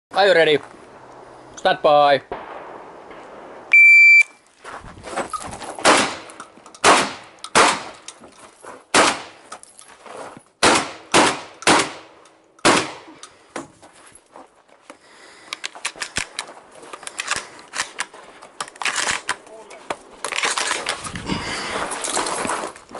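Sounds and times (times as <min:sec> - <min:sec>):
shotgun shots echoing: 0:02.3 - 0:03.8, 0:05.8 - 0:08.0, 0:08.9 - 0:09.4, 0:10.6 - 0:13.2.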